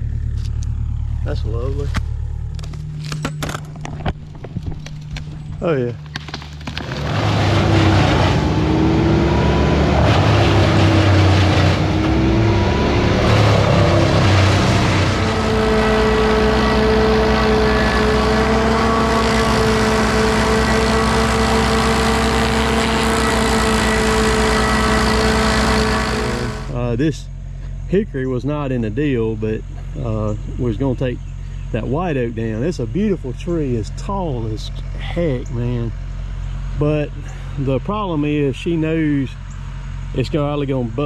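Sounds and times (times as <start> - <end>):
engine running loudly: 0.0 - 27.1.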